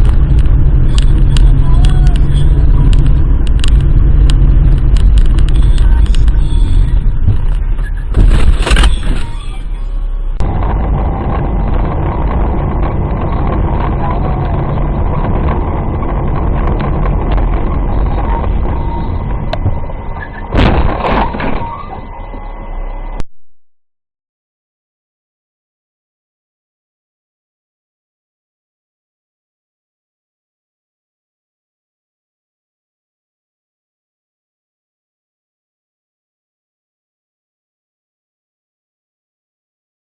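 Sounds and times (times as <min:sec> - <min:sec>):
car engine and road noise: 0:00.0 - 0:23.2
loud sudden noise: 0:08.0 - 0:23.2.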